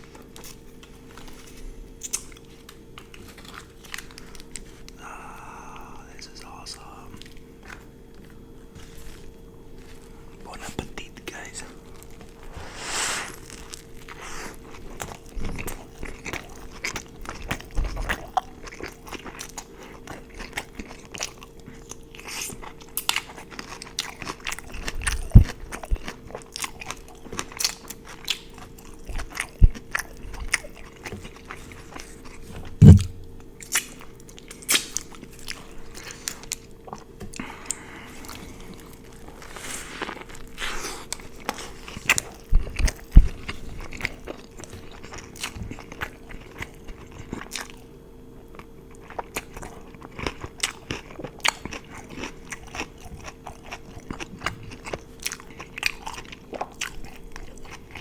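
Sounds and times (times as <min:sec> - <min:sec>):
crunchy chewing: 0:00.0 - 0:58.0
faint steady hum: 0:00.0 - 0:58.0
heavy low thumps: 0:32.8 - 0:33.4.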